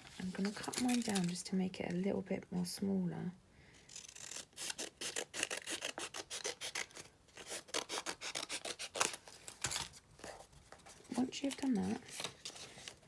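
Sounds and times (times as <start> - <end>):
scissors snipping paper: 3.9 - 9.9.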